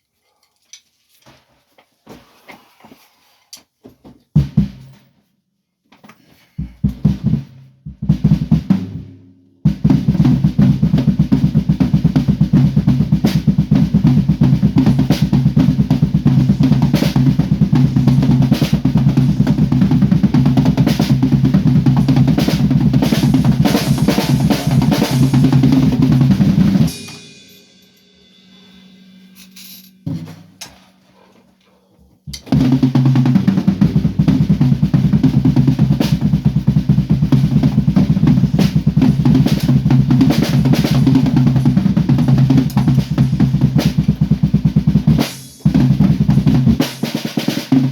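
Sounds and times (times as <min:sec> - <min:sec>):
fast loud drum roll: 0:06.7 - 0:29.4, 0:32.5 - 0:47.9
drum kit hits: 0:09.7 - 0:30.7, 0:32.5 - 0:47.9.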